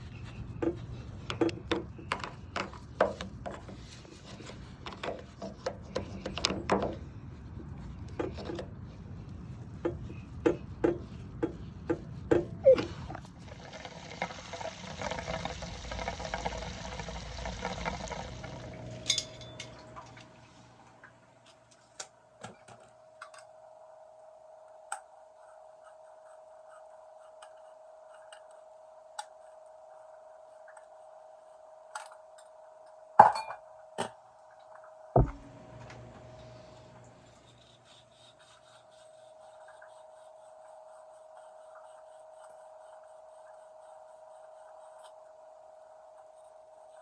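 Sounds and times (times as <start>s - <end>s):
water rushing out: 12.7s - 19.0s.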